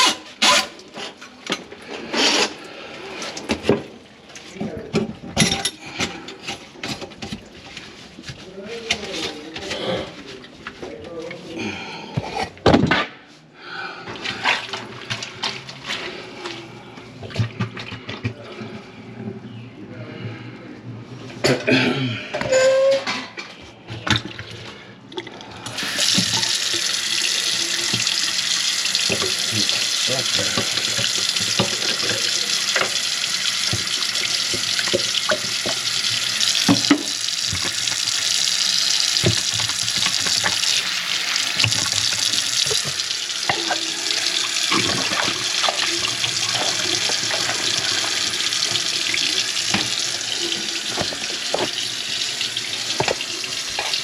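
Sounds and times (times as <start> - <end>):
water running into sink: 25.6 - 54.0.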